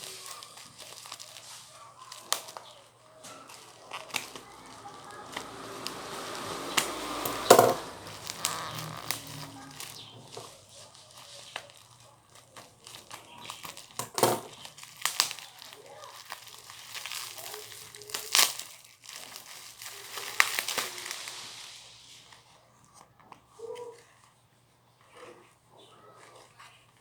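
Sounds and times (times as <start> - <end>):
packaging crinkling and rustling: 0.0 - 24.4.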